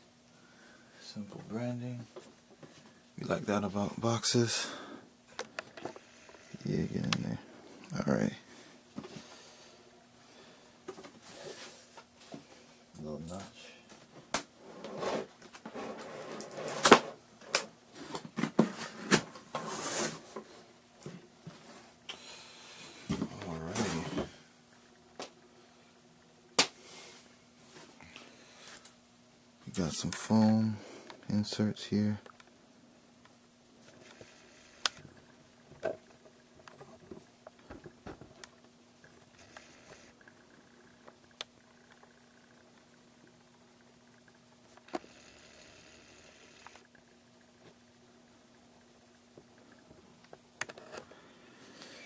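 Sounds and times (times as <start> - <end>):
cardboard rustling and scraping: 18.0 - 20.5.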